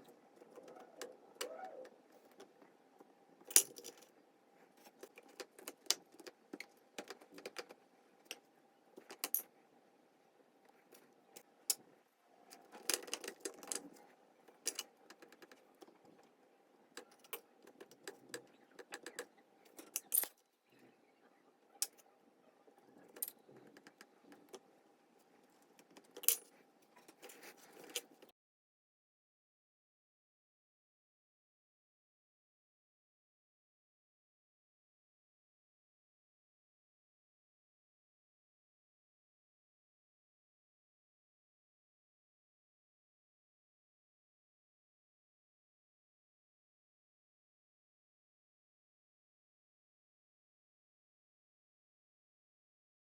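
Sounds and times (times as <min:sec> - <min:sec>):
faint steady hum: 0:00.0 - 0:28.3.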